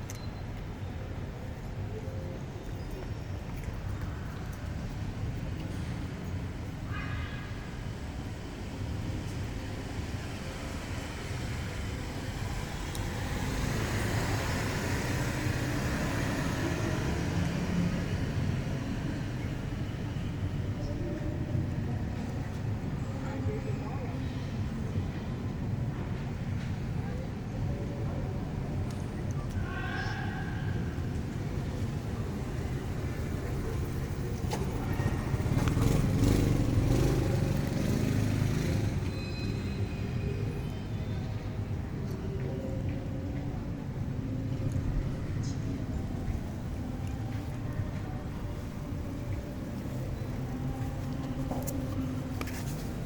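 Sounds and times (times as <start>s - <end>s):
road traffic rumble: 0.0s - 53.0s
vehicle engine passing: 31.0s - 39.0s.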